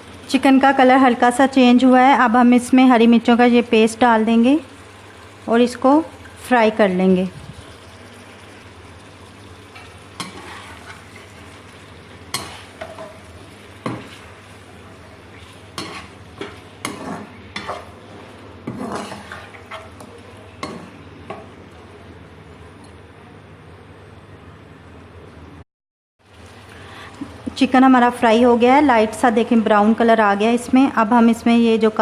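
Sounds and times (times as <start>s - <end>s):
chicken frying in oil: 0.0s - 22.1s, 26.2s - 29.5s
spoon scraping and knocking pan: 9.7s - 11.3s, 12.3s - 14.3s, 15.4s - 21.5s.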